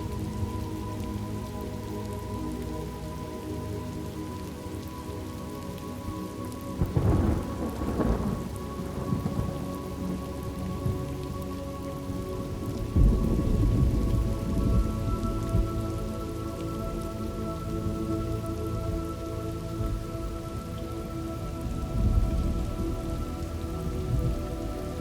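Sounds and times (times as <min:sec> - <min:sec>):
steady rain: 0:00.0 - 0:25.0
thunder rolling: 0:06.9 - 0:09.5.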